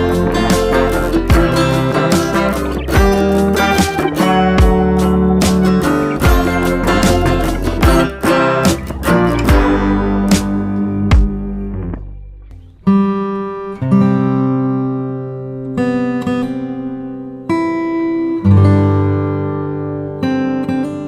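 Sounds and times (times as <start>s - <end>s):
acoustic guitar chords strummed: 0.0s - 21.0s.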